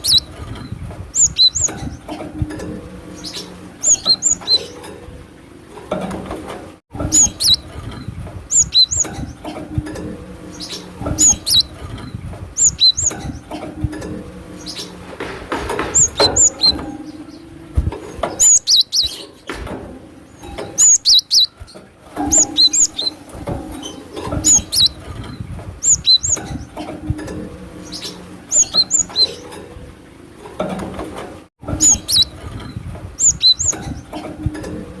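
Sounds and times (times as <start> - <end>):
bird singing high rising notes: 0.0 - 0.3, 1.1 - 1.8, 3.1 - 4.8, 7.1 - 7.6, 8.5 - 9.1, 10.5 - 11.7, 12.6 - 13.3, 18.4 - 19.3, 20.8 - 21.6, 22.3 - 23.2, 23.8 - 25.0, 25.8 - 26.5, 27.8 - 29.4, 31.8 - 32.3, 33.2 - 33.8.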